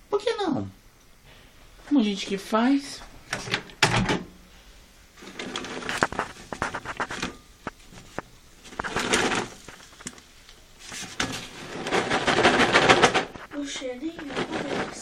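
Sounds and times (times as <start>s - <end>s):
paper popcorn bag crinkling: 5.2s - 15.0s
popcorn kernels rattling: 5.2s - 15.0s.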